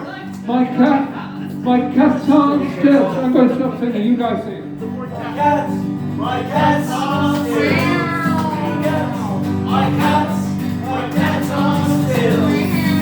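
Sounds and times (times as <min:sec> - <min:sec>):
instrumental accompaniment: 0:04.6 - 0:13.0
group of voices singing: 0:05.3 - 0:13.0.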